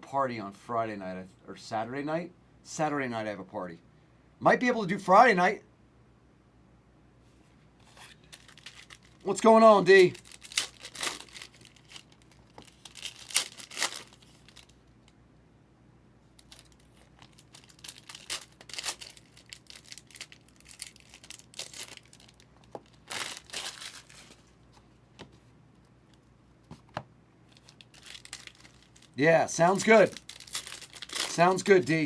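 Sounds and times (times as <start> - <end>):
packaging crinkled and torn: 7.9 - 15.0, 16.4 - 24.5, 27.5 - 32.0.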